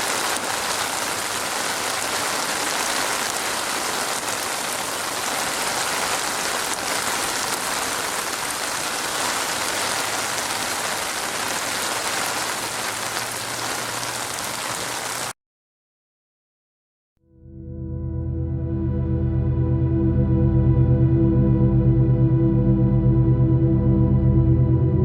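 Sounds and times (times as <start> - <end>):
steady rain falling: 0.0 - 15.4.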